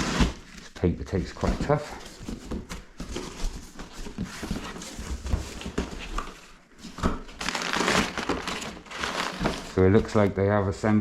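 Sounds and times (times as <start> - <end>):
cardboard rustling and knocks: 1.5 - 10.2.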